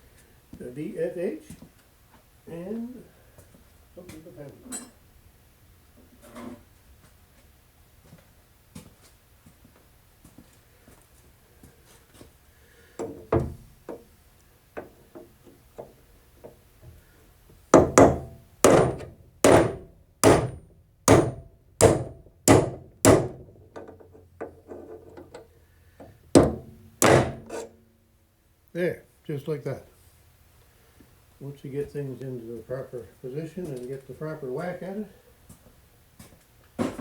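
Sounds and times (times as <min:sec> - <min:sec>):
hammer striking chisel on metal: 0:17.8 - 0:23.9, 0:26.4 - 0:27.7.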